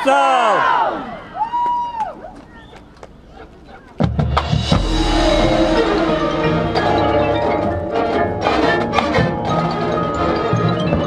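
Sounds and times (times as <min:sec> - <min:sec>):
sharp percussion strikes: 0:04.0 - 0:09.3
marching band chords: 0:04.0 - 0:09.8
mallet percussion ringing: 0:04.5 - 0:11.0.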